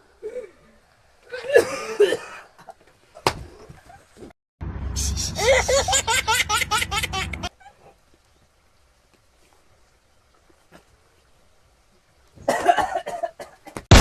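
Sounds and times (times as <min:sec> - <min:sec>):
low rumble: 0:04.6 - 0:06.1
person laughing: 0:05.0 - 0:07.5.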